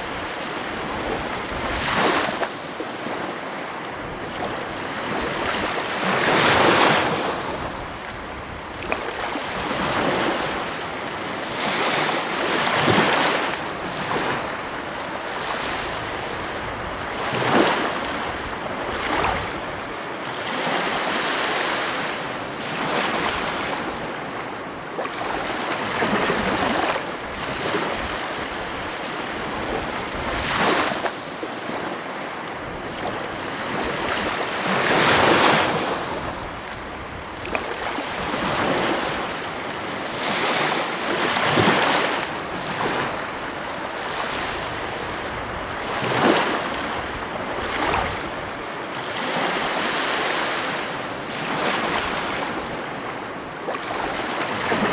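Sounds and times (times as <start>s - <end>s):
ocean waves crashing: 0.0s - 54.9s
wind on microphone: 4.0s - 20.0s, 25.2s - 50.7s.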